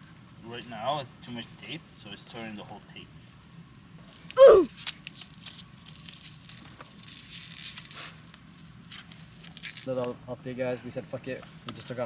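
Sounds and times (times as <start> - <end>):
tape crinkling and tearing: 4.0 - 9.9
short loud cry: 4.4 - 4.7.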